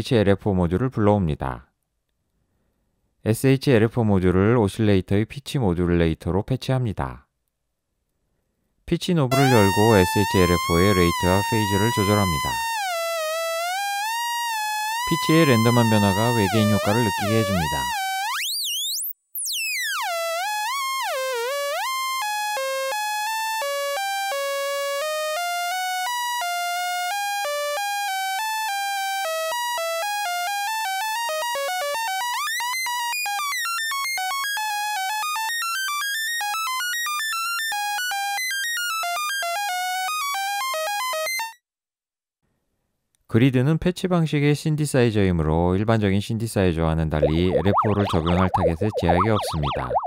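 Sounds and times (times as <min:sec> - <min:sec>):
synthesized alien sound effect: 0:09.3 - 0:12.9, 0:14.6 - 0:18.0, 0:47.0 - 0:50.0.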